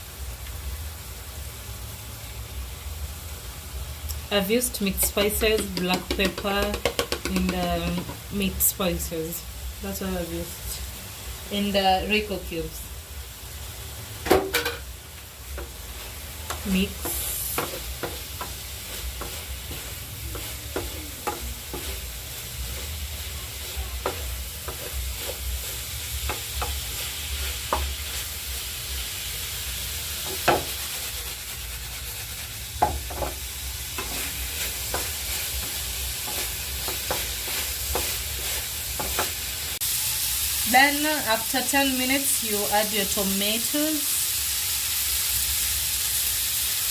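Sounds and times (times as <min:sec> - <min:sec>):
food sizzling in a pan: 0:00.0 - 0:46.9
spoon scraping a pan: 0:15.6 - 0:28.3, 0:32.8 - 0:39.4.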